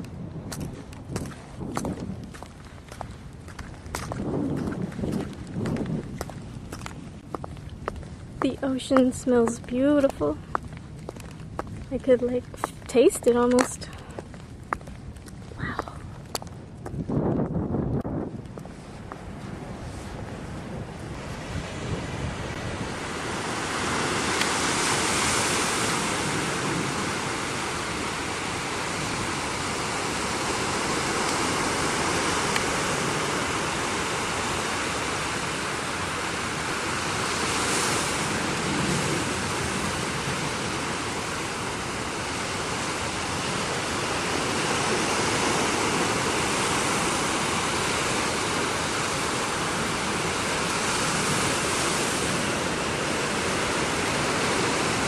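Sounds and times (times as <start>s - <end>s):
ocean surf breaking on shore: 18.2s - 55.0s.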